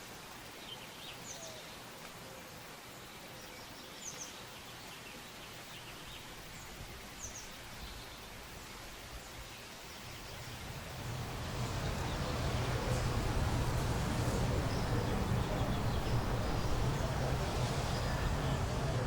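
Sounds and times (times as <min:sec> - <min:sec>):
distant vehicle rumble: 0:10.1 - 0:19.0.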